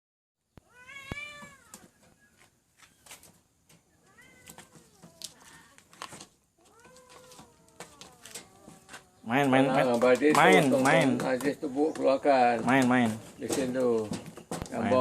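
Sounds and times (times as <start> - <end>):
cat meowing: 0.6 - 1.8, 4.0 - 5.3, 6.6 - 9.0.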